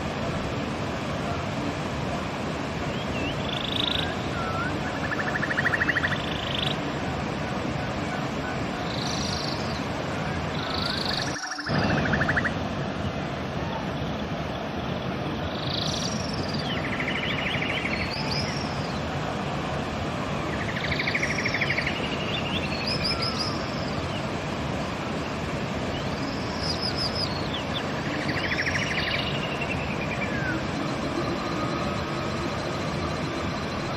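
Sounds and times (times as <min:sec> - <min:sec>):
river water running: 0:00.0 - 0:33.9
songbird singing trills: 0:02.9 - 0:06.9, 0:08.8 - 0:09.9, 0:10.5 - 0:12.5, 0:15.5 - 0:19.0, 0:20.5 - 0:24.3, 0:25.9 - 0:33.9.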